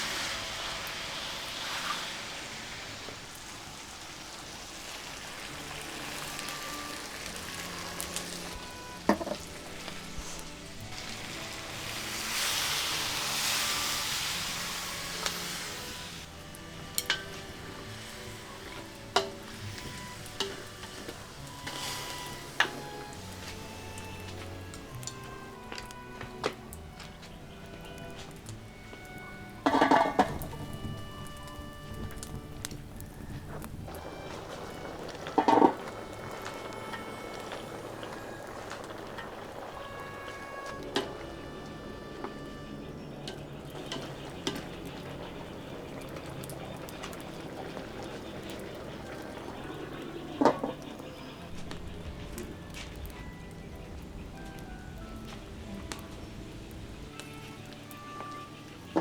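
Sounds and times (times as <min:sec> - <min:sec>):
food sizzling in a pan: 0:00.0 - 0:25.2, 0:33.9 - 0:42.7
stew bubbling in a pot: 0:32.3 - 0:53.9.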